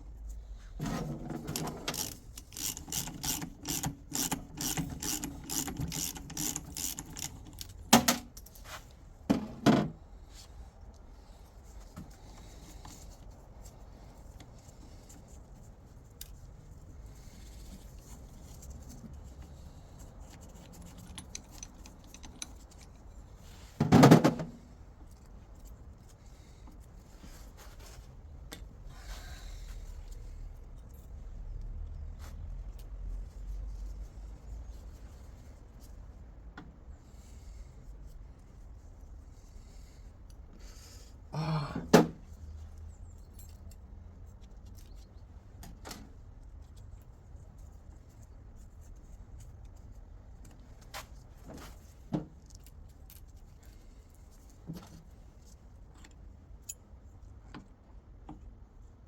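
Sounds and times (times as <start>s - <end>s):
metal tools clinking and rattling: 20.4s - 23.2s.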